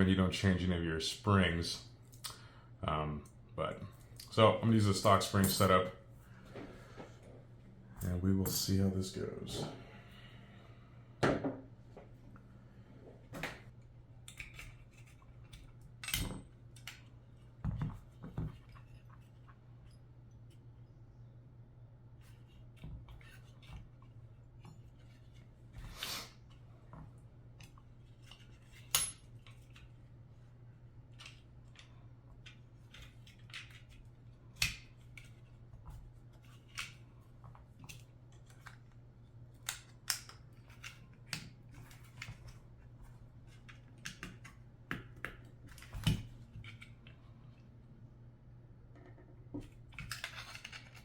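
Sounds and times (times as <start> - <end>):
steady low hum: 0.0 - 50.9
pistol parts clicking: 39.6 - 41.5.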